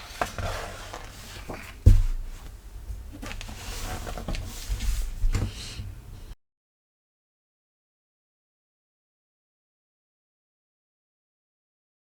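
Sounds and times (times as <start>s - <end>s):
handling knocks and rustles: 0.0s - 5.8s
loud thump: 1.8s - 2.2s.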